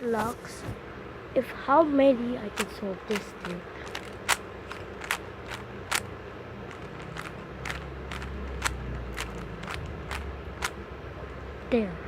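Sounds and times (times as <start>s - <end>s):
plastic puzzle cube clicking: 2.6s - 6.0s, 6.7s - 10.8s.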